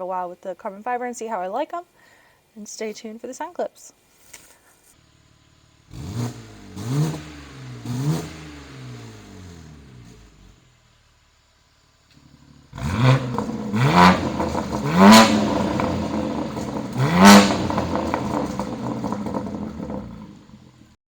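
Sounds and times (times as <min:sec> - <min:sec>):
car engine starting up: 0:05.0 - 0:21.0
loud engine idle: 0:08.7 - 0:21.0.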